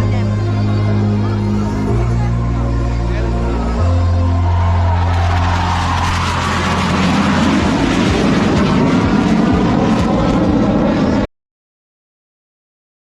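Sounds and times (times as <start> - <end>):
jet aircraft flying past: 4.2 - 11.3.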